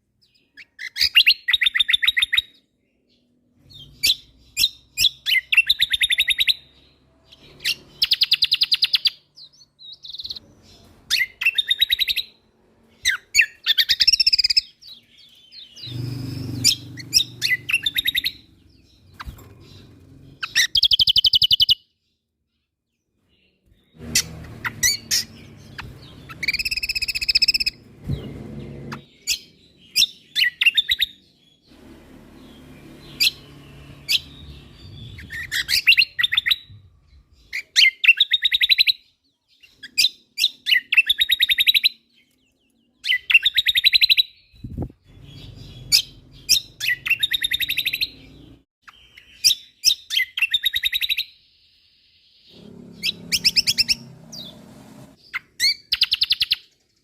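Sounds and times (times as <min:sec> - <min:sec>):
bird singing high notes and trills: 0:00.2 - 0:54.6.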